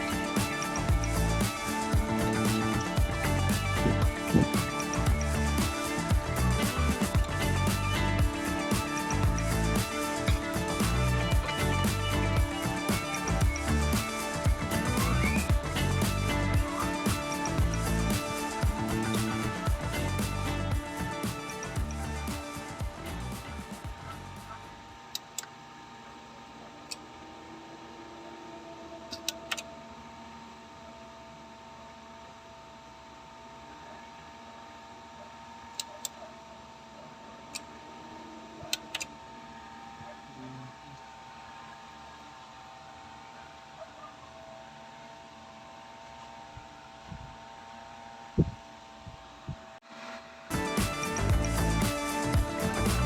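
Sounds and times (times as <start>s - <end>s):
steady tones: 0.0s - 24.9s, 50.5s - 53.0s
electrical hum: 0.0s - 53.0s
thin high whine: 36.5s - 53.0s.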